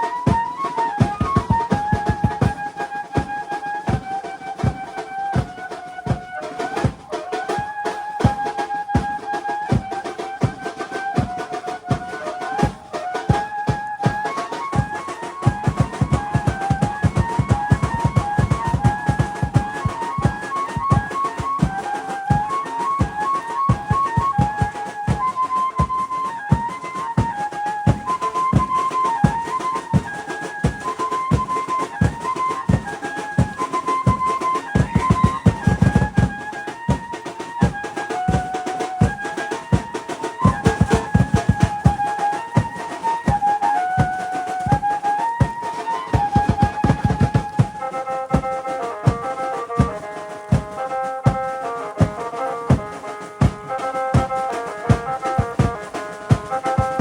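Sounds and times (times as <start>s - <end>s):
fast drum beat: 0.3s - 2.7s, 14.0s - 26.8s, 30.7s - 43.4s, 44.0s - 57.0s.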